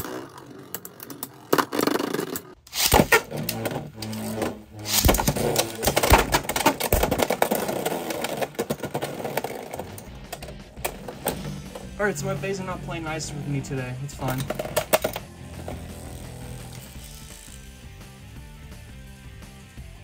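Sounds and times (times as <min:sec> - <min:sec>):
spinning tops clashing: 0:02.3 - 0:11.9.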